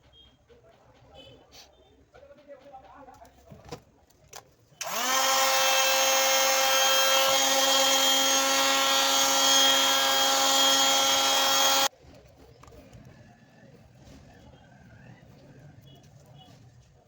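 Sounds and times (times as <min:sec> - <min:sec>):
small electric motor whine: 0:04.8 - 0:11.9.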